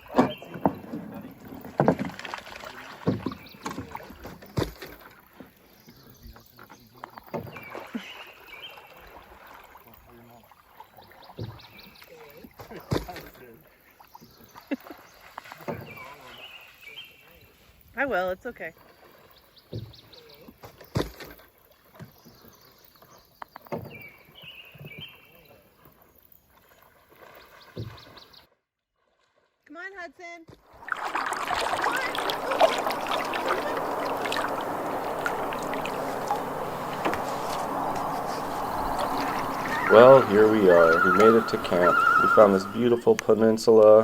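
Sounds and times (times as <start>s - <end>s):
knocks against canoe hull: 0.0s - 2.4s, 3.0s - 5.1s
paddling in water: 0.0s - 29.7s, 30.5s - 44.0s.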